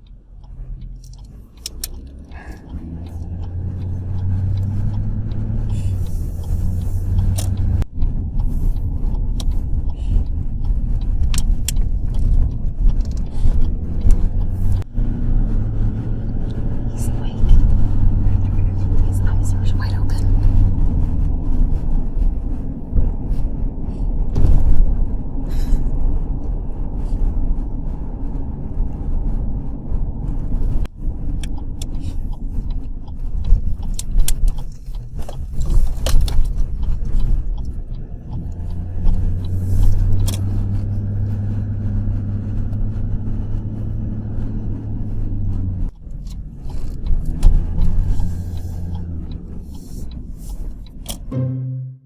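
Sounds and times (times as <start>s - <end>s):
car cabin rumble: 0.0s - 51.8s
light clicks and scrapes: 30.2s - 43.2s, 44.6s - 51.2s.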